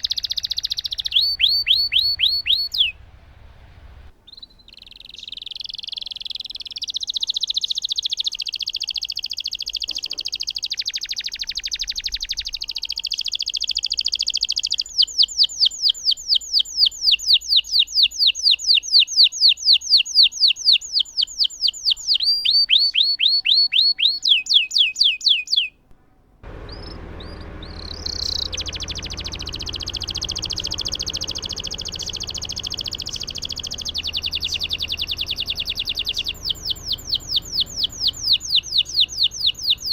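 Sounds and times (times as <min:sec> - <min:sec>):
canary singing trills: 0:00.0 - 0:25.8, 0:26.5 - 0:39.9
background hiss: 0:02.4 - 0:05.2.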